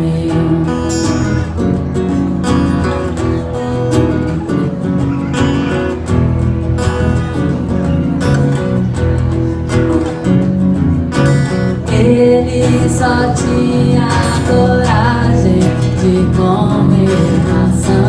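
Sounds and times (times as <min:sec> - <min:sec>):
person singing: 0:00.0 - 0:02.7, 0:11.7 - 0:18.0
bass: 0:00.0 - 0:18.0
strummed acoustic guitar: 0:00.0 - 0:18.0.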